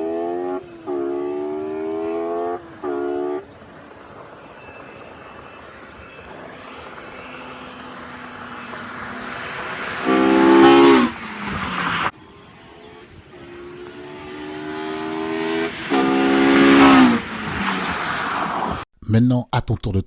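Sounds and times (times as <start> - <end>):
car engine revving high: 0.0 - 3.5, 6.5 - 12.1, 13.5 - 18.8
car passing at high revs: 0.0 - 18.8.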